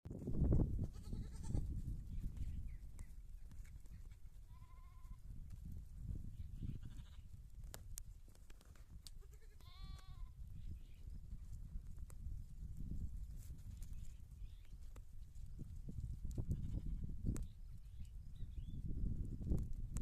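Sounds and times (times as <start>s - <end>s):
goats bleating: 0.9s - 1.7s.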